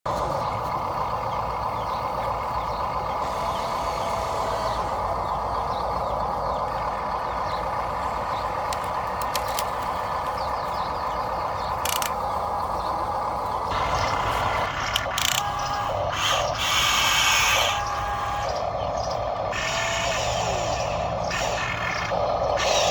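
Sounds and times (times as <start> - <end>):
electric motor and gears whirring: 3.0 - 22.9
sharp clicks: 8.6 - 10.0, 11.7 - 12.2, 14.8 - 15.8.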